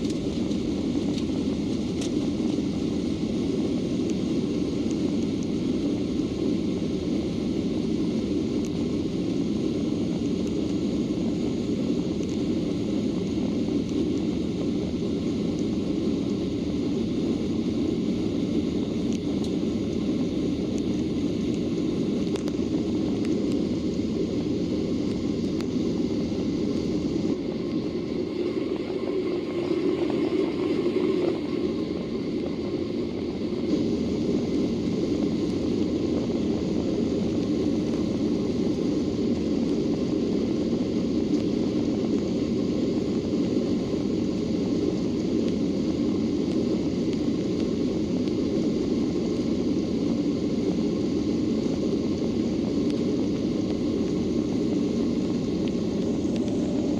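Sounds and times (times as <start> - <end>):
jet engines roaring: 0.0 - 56.9.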